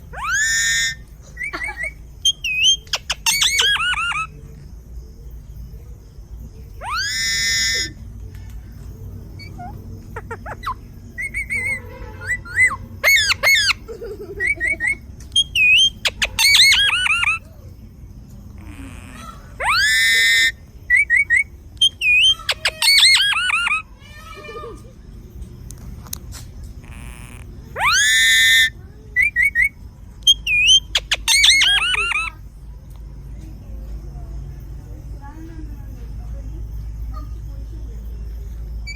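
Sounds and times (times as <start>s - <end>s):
parrot whistles and squawks: 0.1s - 4.3s, 6.8s - 8.0s, 9.4s - 13.8s, 14.4s - 17.5s, 18.6s - 24.8s, 26.8s - 32.4s.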